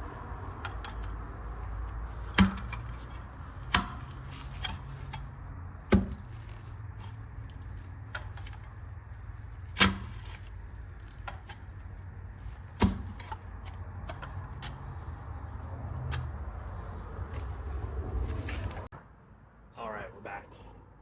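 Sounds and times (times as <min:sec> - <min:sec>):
post hole digger striking soil: 0:00.0 - 0:16.4
light clicks and scrapes: 0:00.0 - 0:18.9.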